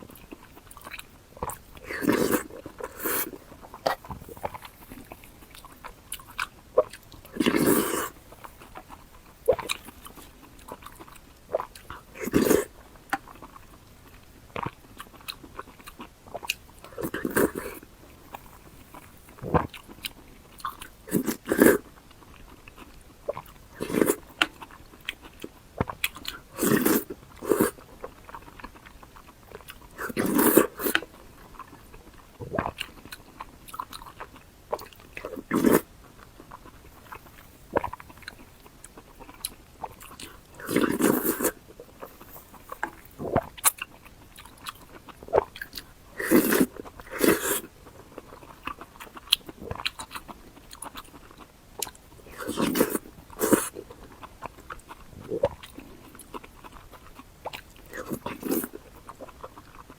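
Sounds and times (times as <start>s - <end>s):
crunchy chewing and biting: 0.0s - 59.9s.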